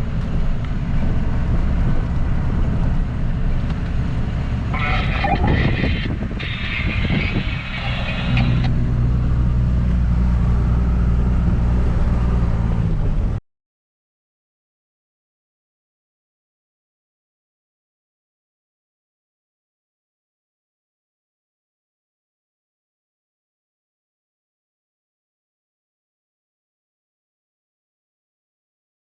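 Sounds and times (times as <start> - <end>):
road noise rumble: 0.0 - 13.4
vehicle engine drone: 0.0 - 13.4.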